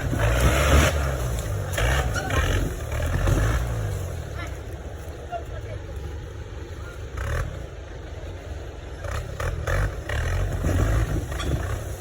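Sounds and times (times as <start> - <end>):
engine revving in surges: 0.0 - 4.4, 9.0 - 12.0
vehicle scraping and clattering: 0.0 - 12.0.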